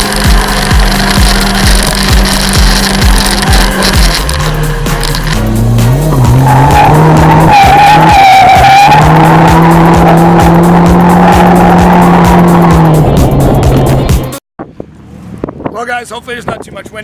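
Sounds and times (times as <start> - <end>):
car engine at high revs: 0.0 - 14.4
tyres squealing and skidding: 6.0 - 12.8.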